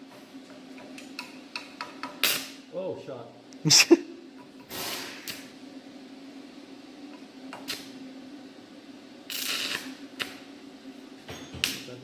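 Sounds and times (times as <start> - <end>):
steady low hum: 0.0 - 12.0
welding arc crackling: 7.5 - 8.0, 9.2 - 10.5.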